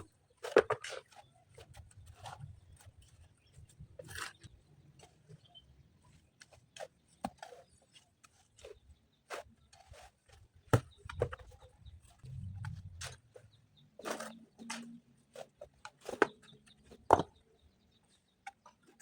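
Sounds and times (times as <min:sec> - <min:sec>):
faint low rumble: 0:12.1 - 0:13.1.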